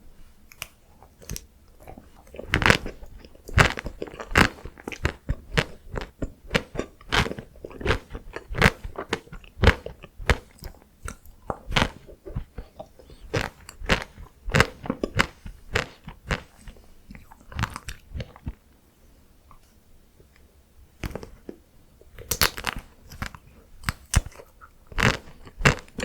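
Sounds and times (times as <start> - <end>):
chocolate shell crunching when bitten: 22.2 - 26.0.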